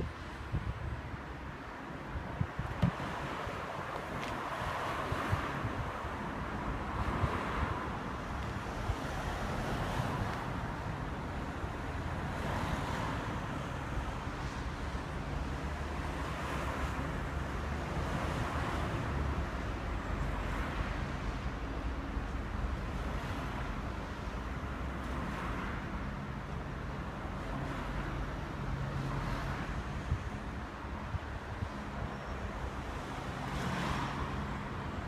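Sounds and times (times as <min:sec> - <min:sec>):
wind noise on microphone: 0:00.0 - 0:19.6, 0:29.1 - 0:35.0.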